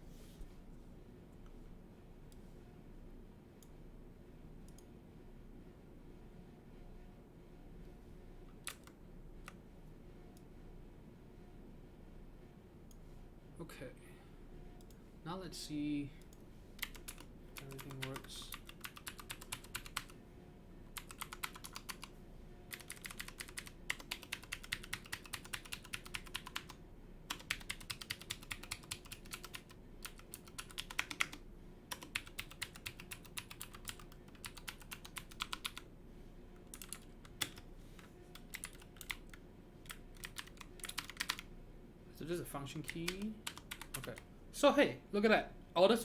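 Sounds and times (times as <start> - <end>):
clicky mechanical keyboard typing: 8.6 - 9.6, 16.3 - 20.2, 21.0 - 22.1, 22.7 - 35.8, 36.6 - 41.5, 42.8 - 44.2.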